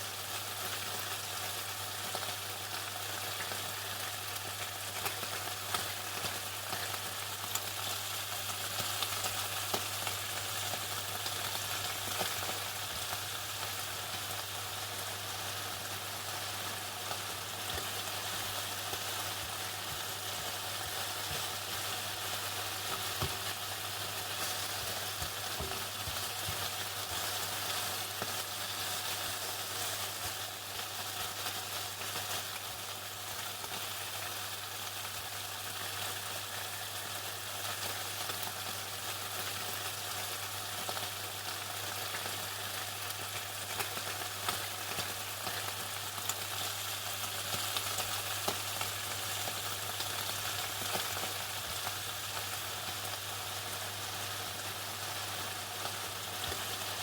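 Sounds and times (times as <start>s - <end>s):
chicken deep-frying in oil: 0.0s - 57.0s.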